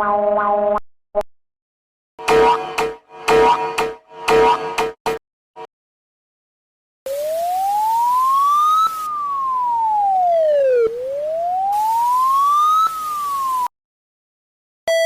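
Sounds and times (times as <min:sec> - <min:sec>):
wailing warning siren: 0:07.1 - 0:13.7.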